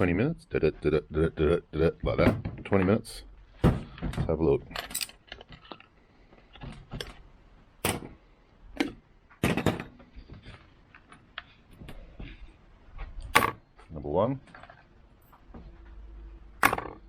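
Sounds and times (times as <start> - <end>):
metal keys clicking and clinking: 4.7 - 5.5.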